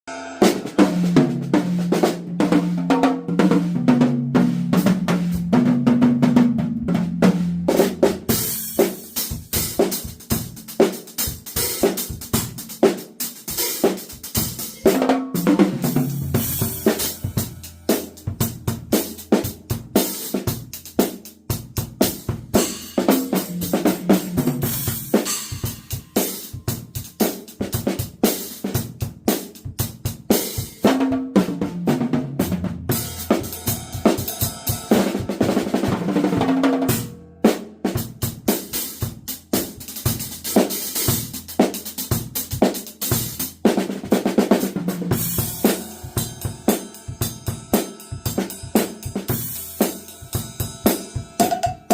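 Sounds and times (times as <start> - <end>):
cymbals: 0.1 - 1.3, 13.5 - 21.1, 22.6 - 27.5, 32.9 - 35.7, 45.1 - 51.9
snare drum: 0.4 - 46.0, 50.9 - 51.9.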